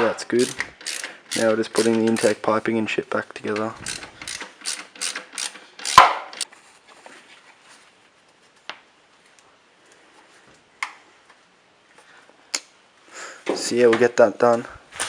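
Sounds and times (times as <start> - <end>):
sharp clicks of tools: 0.4 - 2.4, 3.5 - 6.5.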